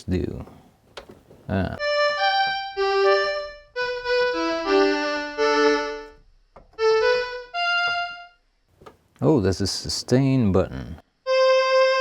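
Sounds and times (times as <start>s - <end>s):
electronic keyboard notes: 1.5s - 6.2s, 6.8s - 8.4s, 11.3s - 12.0s.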